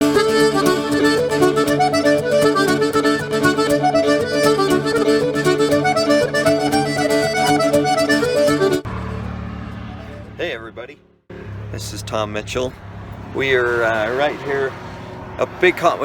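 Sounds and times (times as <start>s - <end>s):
irish folk music with accordion and fiddle: 0.0s - 9.4s.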